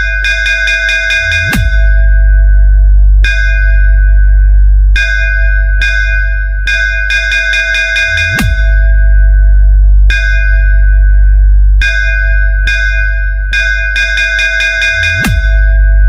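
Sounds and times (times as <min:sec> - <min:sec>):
bell-like synth hits: 0:00.0 - 0:02.4, 0:05.0 - 0:09.2, 0:11.8 - 0:16.0
deep bass: 0:00.0 - 0:07.4, 0:08.0 - 0:16.0.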